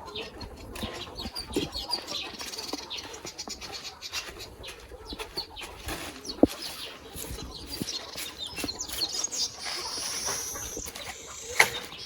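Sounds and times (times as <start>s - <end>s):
chickens clucking and chirping: 0.0s - 12.0s.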